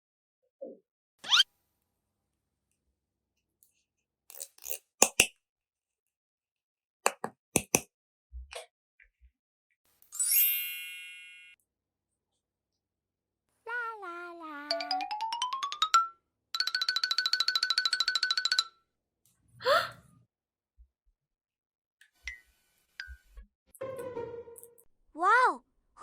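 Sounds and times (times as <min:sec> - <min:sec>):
clicks of small hard objects: 0:04.3 - 0:05.3.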